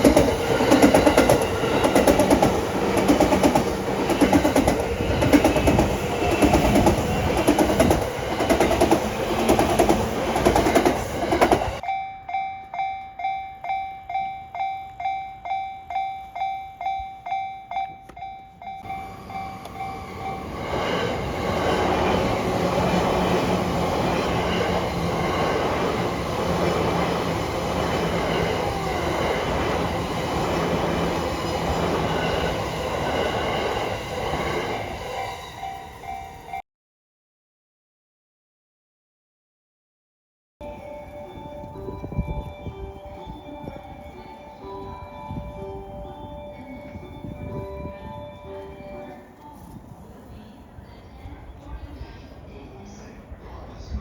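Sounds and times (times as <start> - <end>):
railroad crossing bell ringing: 0.0 - 9.6, 11.2 - 36.6, 40.6 - 49.7
train wheels clattering: 0.0 - 11.8
train running by humming: 0.0 - 36.6, 40.6 - 54.0.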